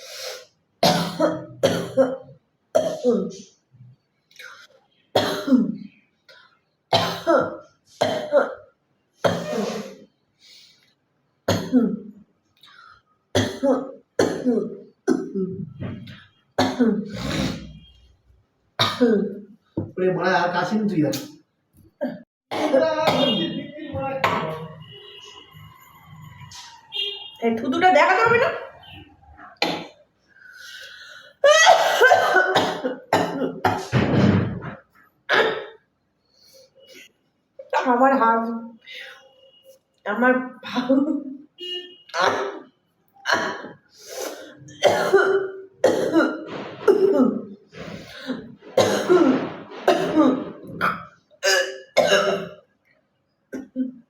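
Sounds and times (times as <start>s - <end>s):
woman clearing throat: 0.8s - 3.5s, 5.2s - 5.8s, 7.0s - 8.7s, 9.3s - 10.0s, 11.5s - 12.1s, 13.4s - 15.8s, 16.6s - 17.8s, 18.8s - 19.4s, 22.0s - 23.6s, 31.5s - 33.9s, 35.3s - 35.8s, 42.2s - 42.6s, 43.2s - 47.5s, 48.2s - 52.6s, 53.6s - 54.0s
woman coughing: 0.8s - 3.5s, 5.2s - 5.8s, 6.9s - 10.0s, 11.5s - 12.1s, 13.4s - 15.6s, 16.6s - 17.7s, 18.8s - 19.4s, 22.0s - 25.2s, 31.4s - 34.0s, 35.3s - 35.8s, 42.2s - 42.6s, 43.2s - 52.6s, 53.5s - 53.9s.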